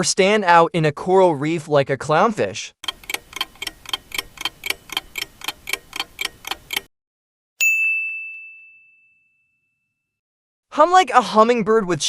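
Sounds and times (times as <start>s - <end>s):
clock ticking: 2.8s - 6.9s
bell ding: 7.6s - 10.1s.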